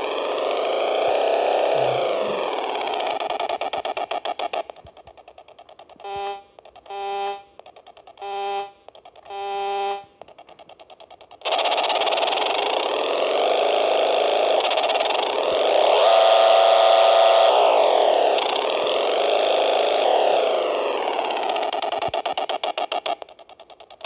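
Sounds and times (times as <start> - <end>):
toy boat motor whining: 0.0 - 5.2, 11.4 - 23.3.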